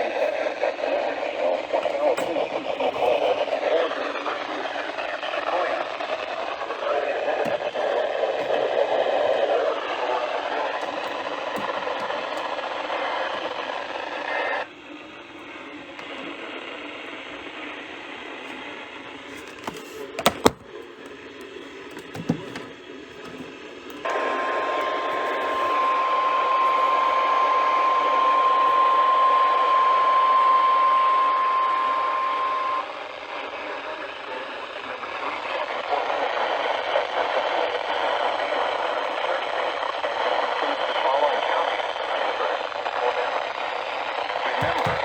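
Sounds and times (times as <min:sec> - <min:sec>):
radio static hiss: 0:00.0 - 0:45.0.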